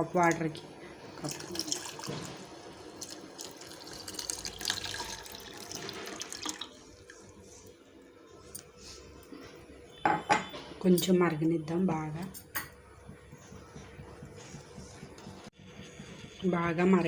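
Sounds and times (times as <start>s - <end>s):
milk pouring into pan: 1.0s - 7.4s.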